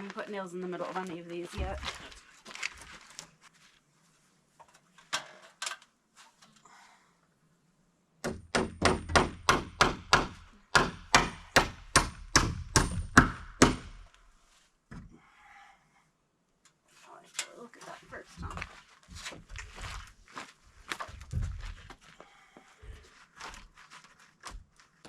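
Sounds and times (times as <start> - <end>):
hammer driving nails into wood: 8.2 - 14.2.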